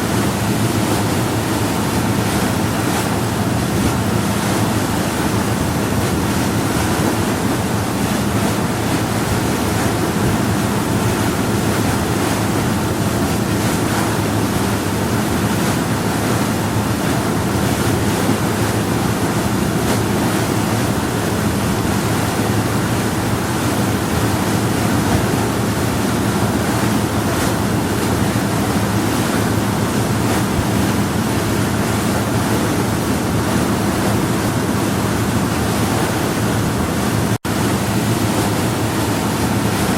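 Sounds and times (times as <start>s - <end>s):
boat engine drone: 0.0s - 39.9s
water rushing along hull: 0.0s - 39.9s.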